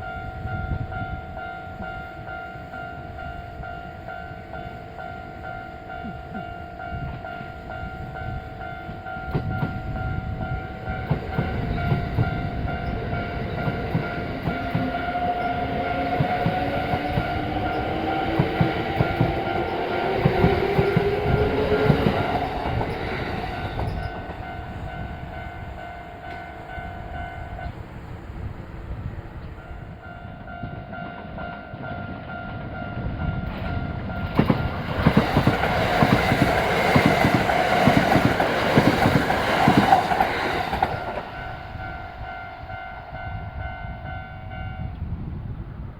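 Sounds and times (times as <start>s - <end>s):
train wheels clattering: 8.8s - 26.9s, 33.4s - 41.8s.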